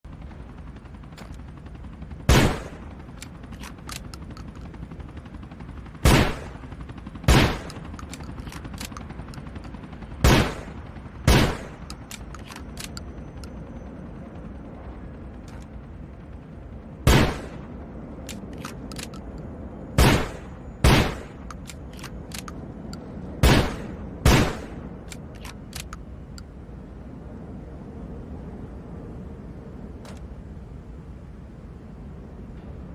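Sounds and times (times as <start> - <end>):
loud shotgun shots: 2.3 - 2.8, 6.0 - 6.5, 7.3 - 7.7, 10.2 - 10.7, 11.3 - 11.8, 17.1 - 17.5, 20.0 - 21.4, 23.4 - 24.8
small clicks: 3.1 - 4.8, 7.6 - 9.8, 11.8 - 13.5, 18.2 - 19.5, 21.4 - 23.1, 25.0 - 26.5
steady background hiss: 22.6 - 32.9.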